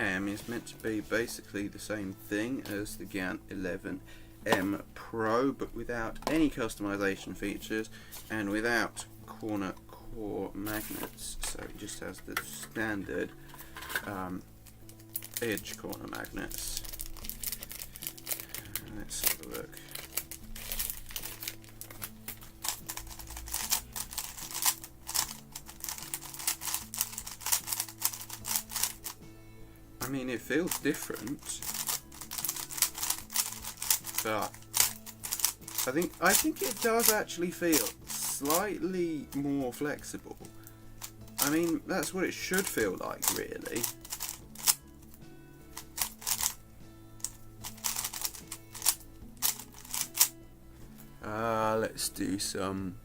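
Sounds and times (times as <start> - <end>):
background music with low notes: 0.0 - 53.0
speedcube clicking and clacking: 19.9 - 29.2, 31.6 - 38.6, 42.6 - 45.1, 45.8 - 46.6, 47.2 - 50.3.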